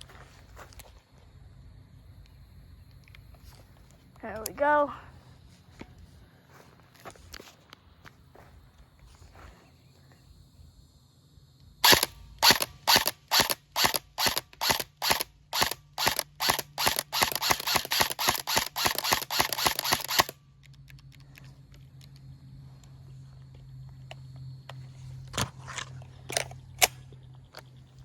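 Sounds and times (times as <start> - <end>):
airsoft gun shots: 11.8 - 20.3.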